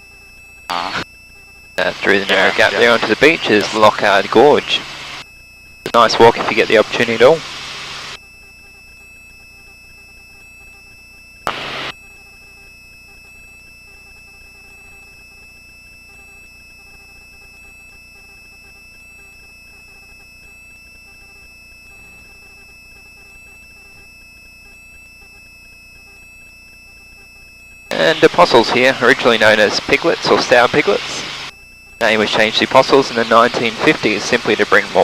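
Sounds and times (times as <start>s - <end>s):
intercom hum and hiss: 0.7s - 1.1s, 1.8s - 5.2s, 5.9s - 8.2s, 11.5s - 11.9s, 27.9s - 35.0s.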